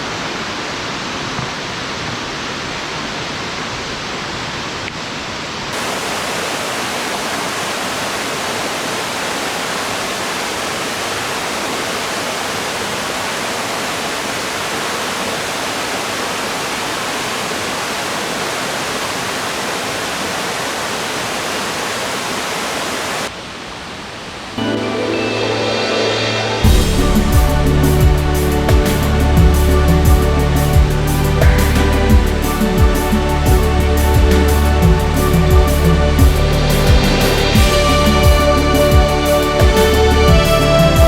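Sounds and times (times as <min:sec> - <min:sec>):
waterfall rushing: 0:00.0 - 0:41.0.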